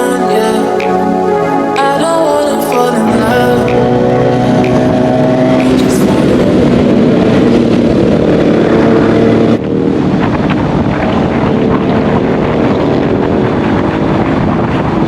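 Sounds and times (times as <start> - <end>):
wind buffeting microphone: 3.1 - 15.0
motorcycle engine running: 6.4 - 14.7.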